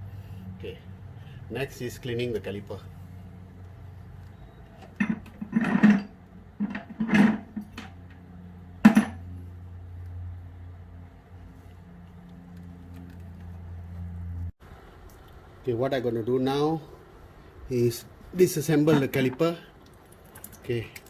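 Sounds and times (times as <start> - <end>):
steady low hum: 0.0 - 20.6
metal parts clinking and knocking: 4.8 - 8.2, 18.9 - 21.0.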